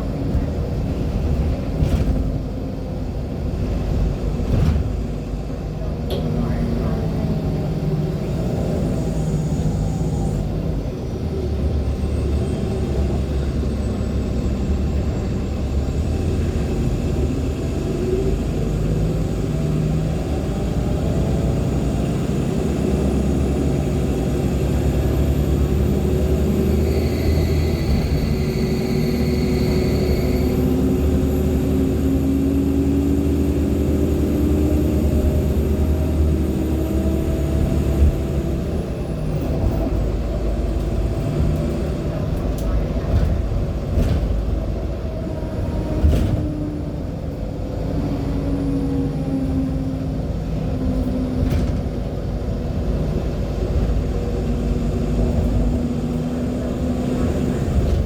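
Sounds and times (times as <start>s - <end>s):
bus engine low hum: 0.0s - 58.0s
high turbo whine: 7.3s - 42.6s.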